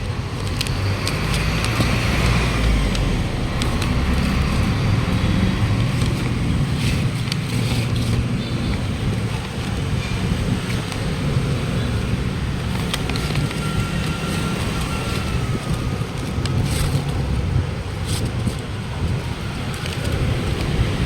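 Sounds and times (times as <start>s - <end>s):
sharp clicks and knocks: 0.0s - 11.2s
traffic engines rumbling: 0.0s - 21.0s.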